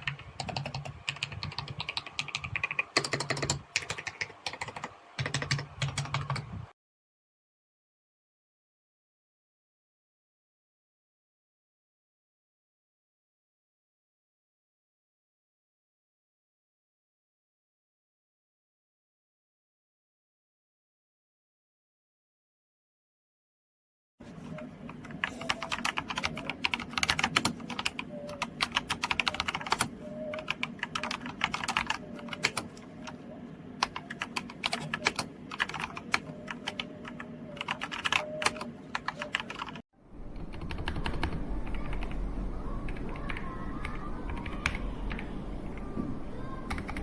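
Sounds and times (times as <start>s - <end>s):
mechanical keyboard typing: 0.0s - 6.6s, 24.5s - 33.2s, 33.8s - 39.8s, 40.4s - 42.2s, 42.9s - 45.9s, 46.7s - 47.0s
steady low hum: 24.2s - 47.0s.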